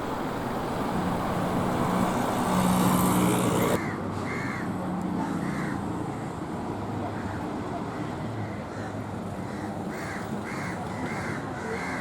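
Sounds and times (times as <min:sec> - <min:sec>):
vehicle engine passing: 0:00.0 - 0:03.8
road traffic: 0:00.0 - 0:12.0
crow cawing: 0:03.8 - 0:05.8, 0:08.7 - 0:12.0.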